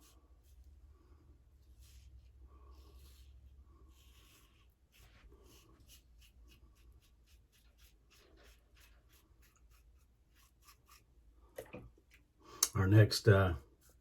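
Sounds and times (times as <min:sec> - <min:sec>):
razor scraping through stubble: 0:04.1 - 0:11.1.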